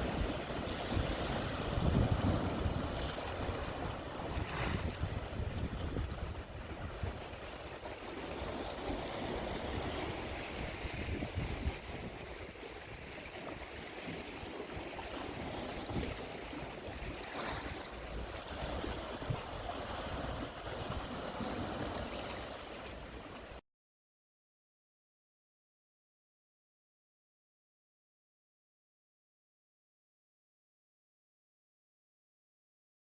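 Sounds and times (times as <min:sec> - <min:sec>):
wind buffeting microphone: 0:00.0 - 0:22.2
sea waves washing on shore: 0:00.0 - 0:23.6.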